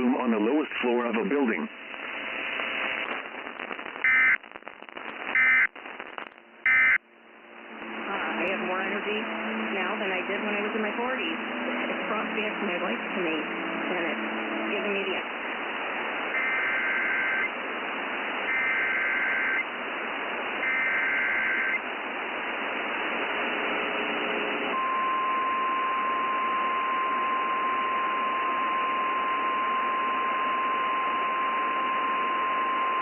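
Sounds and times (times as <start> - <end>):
radio static hiss: 0.0 - 33.0
warbling data tones: 4.0 - 4.4, 5.3 - 5.7, 6.6 - 7.0, 16.3 - 17.6, 18.4 - 19.7, 20.6 - 21.8
steady alarm tone: 6.7 - 7.0, 16.3 - 17.5, 18.5 - 19.6, 20.6 - 21.8.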